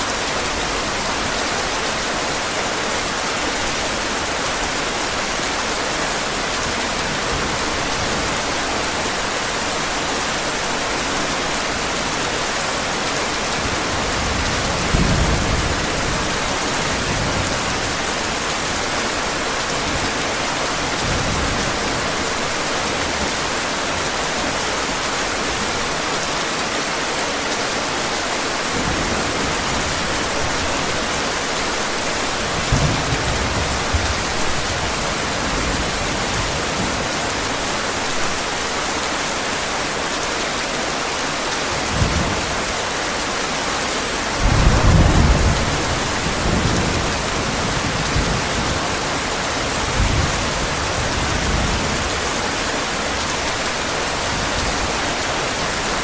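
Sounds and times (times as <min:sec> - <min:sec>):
heavy rain falling: 0:00.0 - 0:56.0
thunder rolling: 0:44.4 - 0:48.5.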